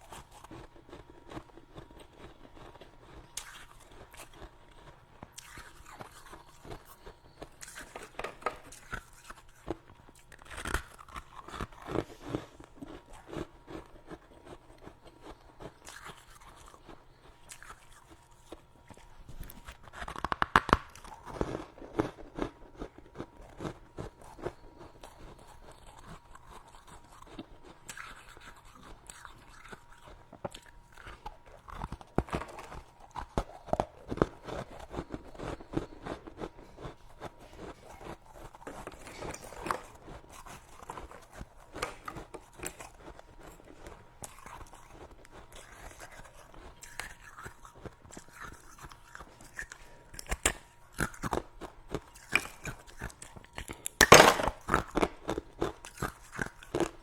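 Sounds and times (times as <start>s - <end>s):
frost crunching while chewed: 0.0s - 57.0s.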